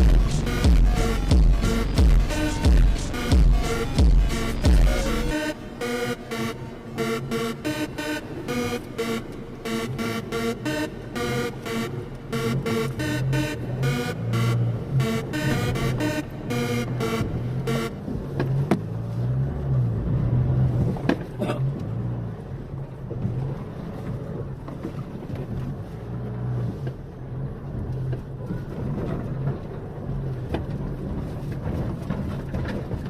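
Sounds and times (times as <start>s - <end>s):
electronic music: 0.0s - 18.7s
motor engine droning: 0.0s - 33.0s.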